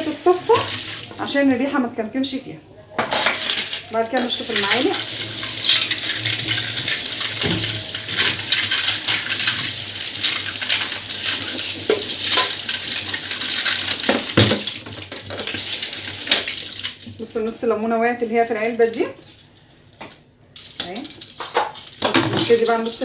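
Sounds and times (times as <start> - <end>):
tap water running: 0.0 - 2.2, 3.0 - 17.3
metal spoons clinking: 3.0 - 17.0, 20.6 - 23.0.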